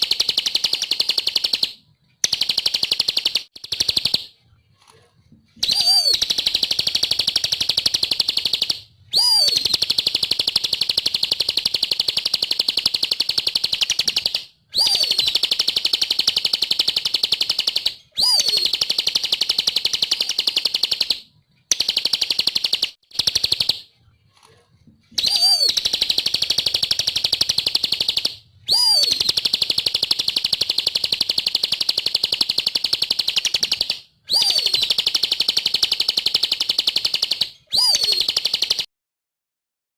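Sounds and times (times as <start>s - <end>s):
bird singing high rapid trills: 5.6s - 21.1s, 25.2s - 38.7s.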